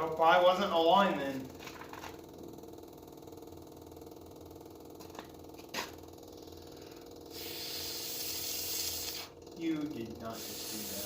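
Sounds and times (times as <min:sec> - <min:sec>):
fuel pump humming: 0:00.0 - 0:11.0
steady hiss: 0:07.3 - 0:09.3, 0:10.2 - 0:11.0.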